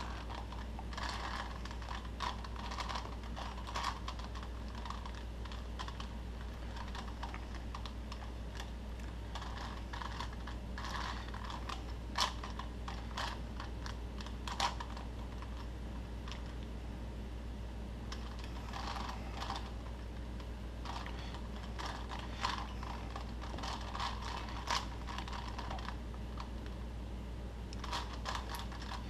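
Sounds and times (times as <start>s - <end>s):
plastic cube clicking and clacking: 0.0s - 6.1s, 9.3s - 15.6s, 20.9s - 25.9s.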